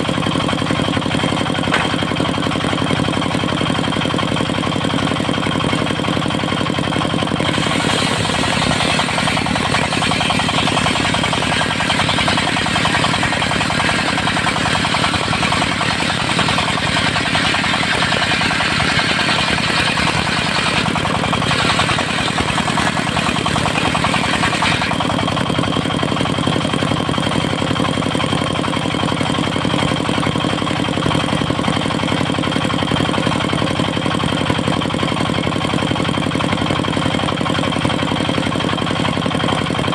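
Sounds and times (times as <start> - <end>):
diesel engine running: 0.0 - 39.9
saw blade hissing through wood: 7.4 - 14.8.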